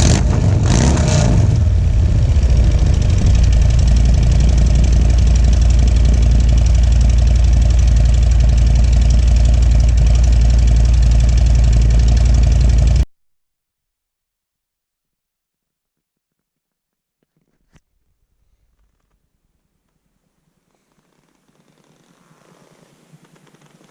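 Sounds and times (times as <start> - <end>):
motorcycle engine idling: 0.0 - 13.0.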